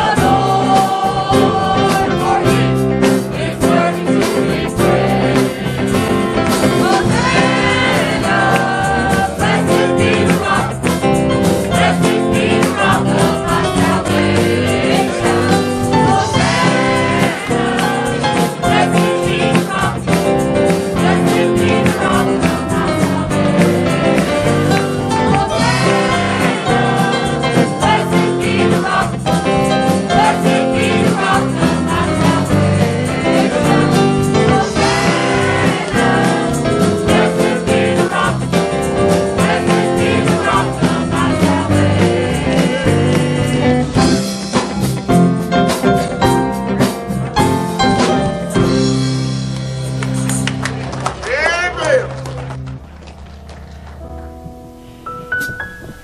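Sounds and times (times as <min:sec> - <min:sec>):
singers with band worship song: 0:00.0 - 0:44.6.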